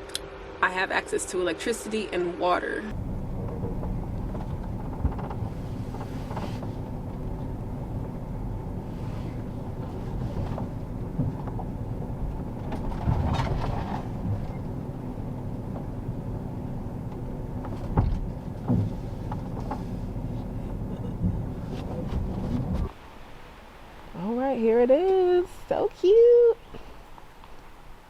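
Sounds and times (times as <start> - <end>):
vehicle engine running: 2.9 - 22.9
short knocks and bumps: 3.0 - 8.3, 9.0 - 14.8, 17.1 - 22.9.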